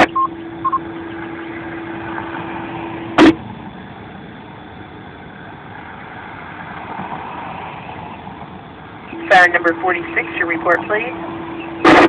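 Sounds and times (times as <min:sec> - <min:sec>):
radio background hiss: 0:00.0 - 0:00.2, 0:08.9 - 0:12.0
radio steady low tone: 0:00.0 - 0:06.5, 0:07.8 - 0:12.0
loud radio crackle: 0:09.0 - 0:12.0.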